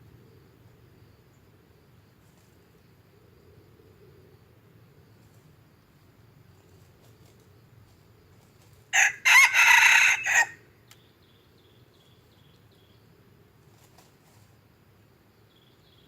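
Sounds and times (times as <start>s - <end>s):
rapid insect chirping: 0.0s - 16.0s
rooster crowing: 8.9s - 10.7s.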